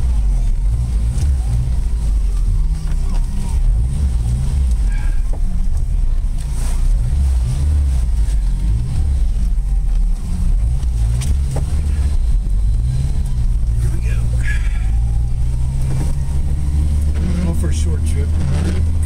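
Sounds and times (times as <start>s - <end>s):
car engine revving: 0.0s - 19.0s.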